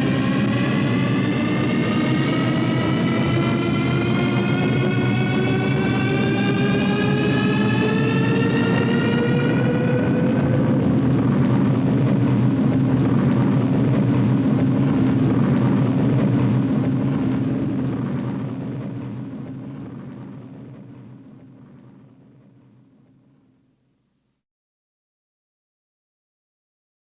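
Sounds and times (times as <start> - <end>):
dense low rumble: 7.8 - 22.3.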